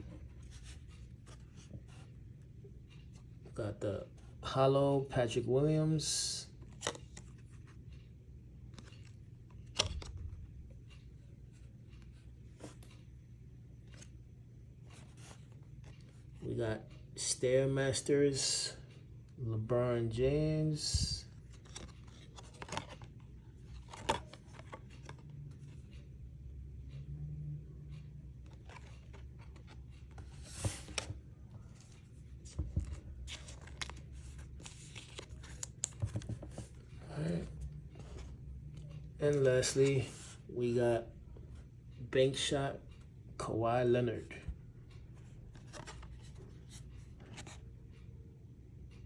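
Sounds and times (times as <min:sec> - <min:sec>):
faint steady hum: 0:00.0 - 0:49.0
trading cards shuffling: 0:20.8 - 0:26.0, 0:28.4 - 0:38.4, 0:45.6 - 0:47.6.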